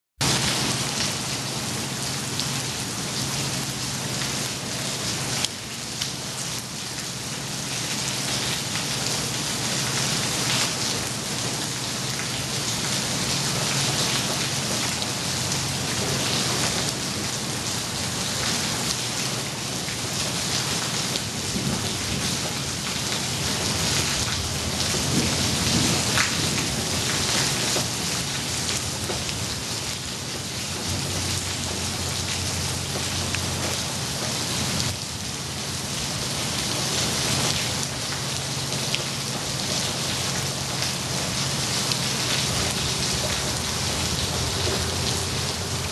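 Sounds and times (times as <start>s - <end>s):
heavy rain pouring: 0.2s - 45.9s
thunder rumbling: 21.4s - 29.6s, 42.0s - 45.9s.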